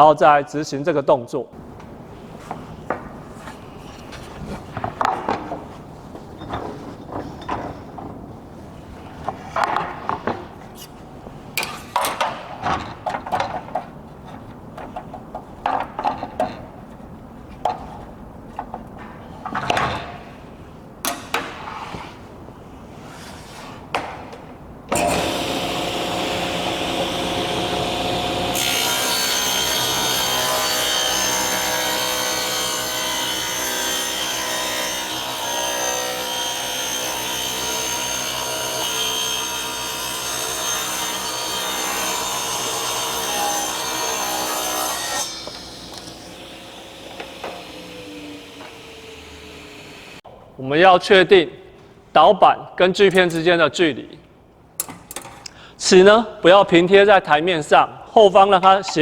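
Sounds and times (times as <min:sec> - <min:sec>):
wood and saw parts clattering: 0:02.5 - 0:08.3, 0:09.2 - 0:11.0, 0:11.6 - 0:20.4, 0:24.9 - 0:49.8
table saw humming: 0:24.9 - 0:50.2
saw blade ripping through board: 0:25.0 - 0:46.4.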